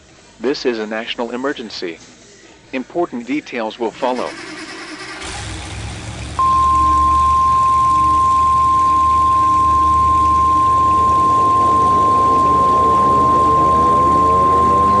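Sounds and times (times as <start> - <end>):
faint rising sweeps: 6.4 - 15.0
high-pitched alert beep: 6.4 - 15.0.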